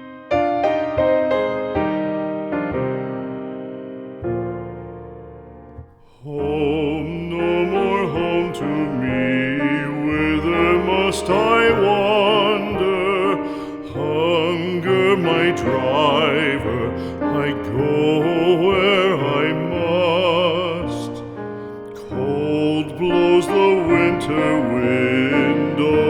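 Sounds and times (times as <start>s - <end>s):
piano chord: 0.0s - 26.0s
person singing slow ballad with piano: 5.8s - 26.0s.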